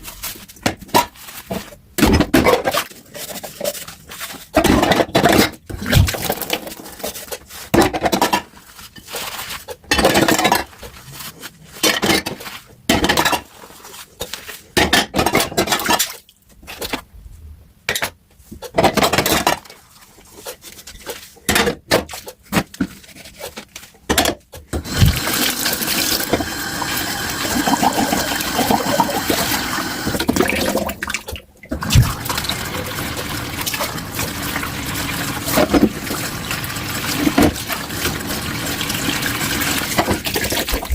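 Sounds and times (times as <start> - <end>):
tap running: 24.8 - 30.4.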